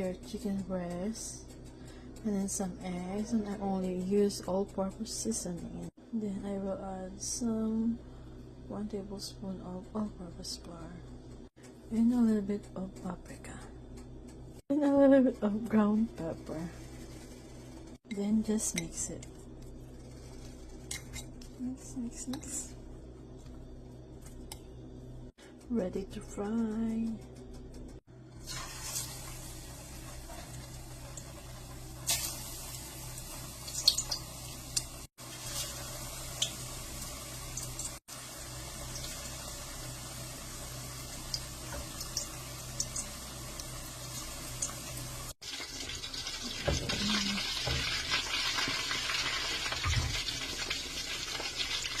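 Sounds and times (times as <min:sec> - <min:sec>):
chicken frying in oil: 0:28.3 - 0:52.0.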